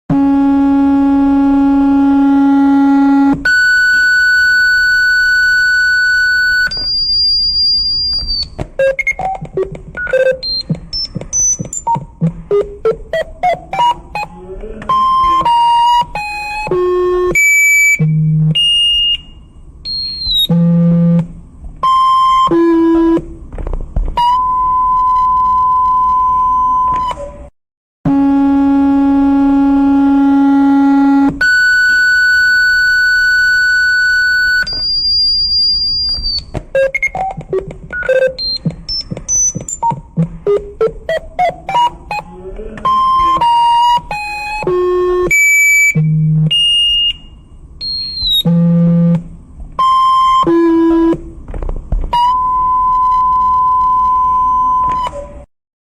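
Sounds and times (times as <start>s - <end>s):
long steady tone: 0.1s - 8.2s, 28.1s - 36.0s
buzzy alarm tone: 0.1s - 23.2s, 28.1s - 51.2s
short rising beeps: 1.8s - 14.3s, 31.4s - 42.3s, 42.9s - 49.2s
high beep: 3.4s - 14.3s, 31.4s - 42.3s, 42.9s - 49.2s.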